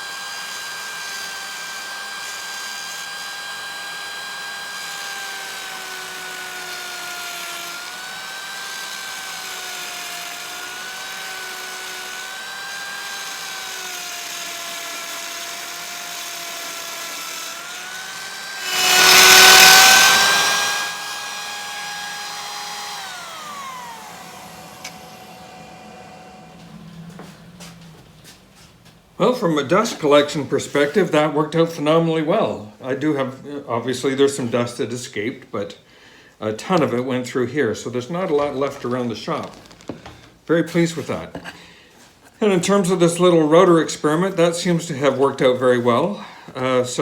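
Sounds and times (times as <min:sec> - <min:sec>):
dust collector blower: 0:00.0 - 0:28.9
router whining through wood: 0:00.0 - 0:29.2, 0:38.2 - 0:41.5.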